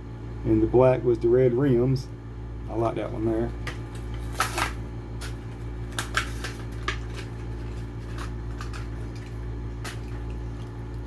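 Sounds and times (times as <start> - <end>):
steady low hum: 0.0 - 11.0
plastic packaging clicks and crinkles: 3.7 - 10.3.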